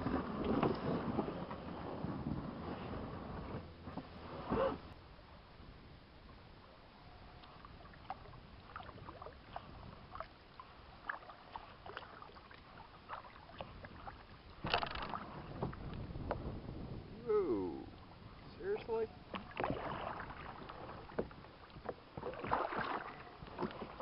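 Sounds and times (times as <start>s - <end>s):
paddle splashing water: 7.4s - 16.6s, 17.9s - 24.0s.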